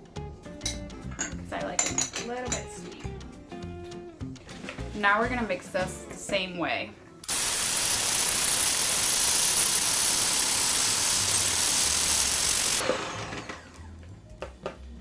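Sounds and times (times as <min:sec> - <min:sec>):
electric mixer running: 0:07.3 - 0:14.0.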